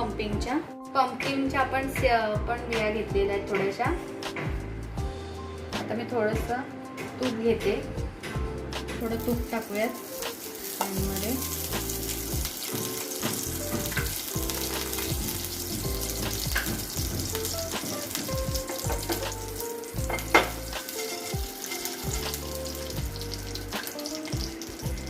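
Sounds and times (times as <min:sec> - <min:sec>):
seeds sizzling in a pan: 0:09.2 - 0:25.0.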